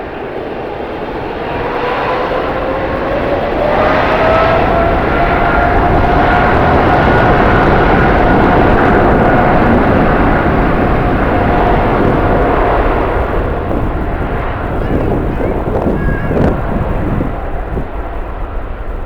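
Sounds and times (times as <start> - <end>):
jet engines running loud: 0.0 - 19.0.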